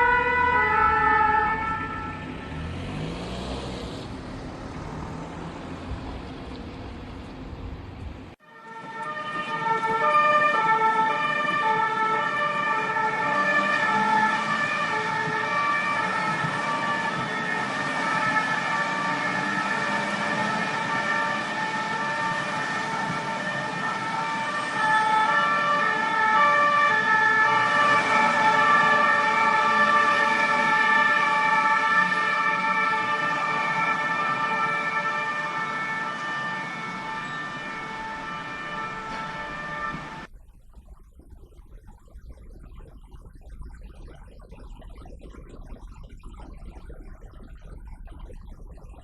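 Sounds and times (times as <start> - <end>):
two-tone siren: 0.0 - 6.0, 8.4 - 40.3, 41.2 - 49.0
traffic noise: 0.0 - 40.3.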